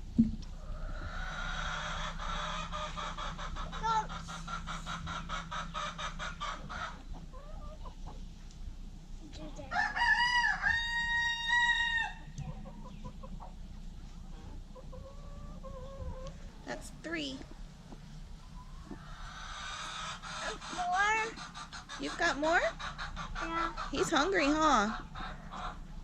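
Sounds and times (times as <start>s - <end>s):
chickens clucking: 0.0s - 26.0s
rooster crowing: 9.7s - 12.3s.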